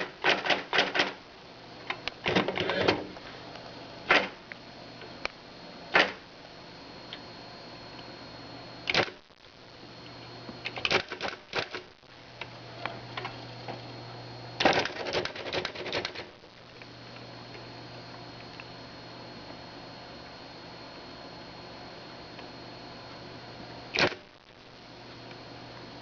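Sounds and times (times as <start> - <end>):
electronic typewriter strikes: 0.0 - 1.2, 4.1 - 4.4, 5.9 - 6.2, 8.8 - 9.2, 10.7 - 11.9, 14.6 - 16.4, 23.9 - 24.3
motor hum with high whine: 0.0 - 26.0.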